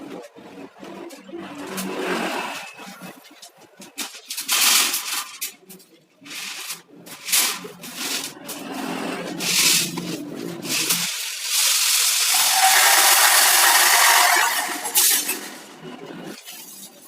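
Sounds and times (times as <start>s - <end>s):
steel bars scraping and rubbing: 11.6s - 15.9s.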